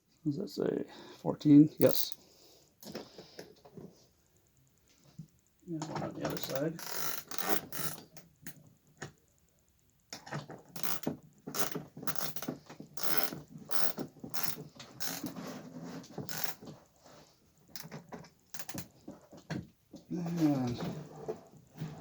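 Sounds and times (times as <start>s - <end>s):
ratchet wrench clicking: 1.8s - 2.2s, 6.3s - 8.6s, 10.8s - 15.3s, 16.3s - 16.6s, 18.5s - 18.9s.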